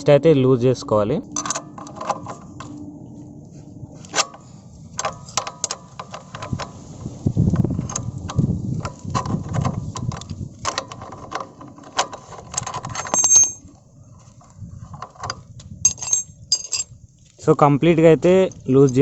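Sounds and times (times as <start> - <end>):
spanner metal clicks and knocks: 1.4 - 2.8, 4.0 - 17.0.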